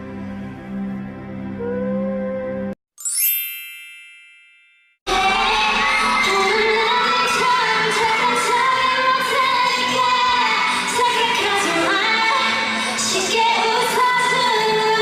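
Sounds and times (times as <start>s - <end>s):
women singing pop song: 5.1s - 15.0s.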